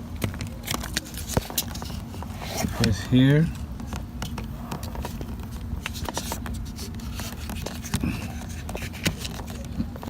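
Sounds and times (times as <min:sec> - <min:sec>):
plastic fastener clicks and scrapes: 0:03.8 - 0:10.0.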